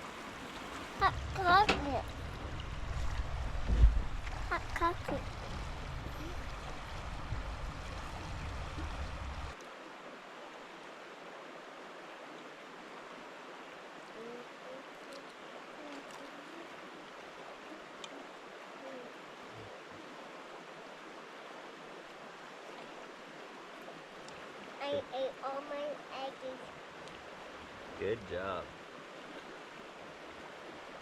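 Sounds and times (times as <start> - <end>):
river water rushing: 0.0 - 31.0.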